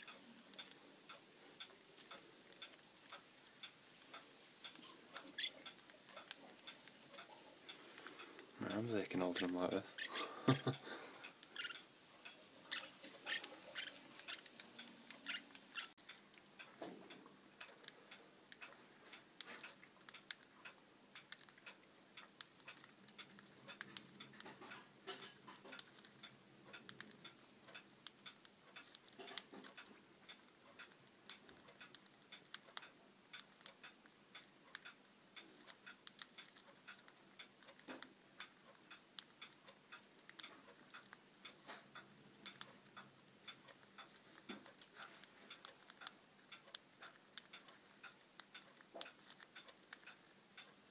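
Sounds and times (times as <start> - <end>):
birds cracking seeds with beaks: 0.0 - 16.9, 19.3 - 34.0.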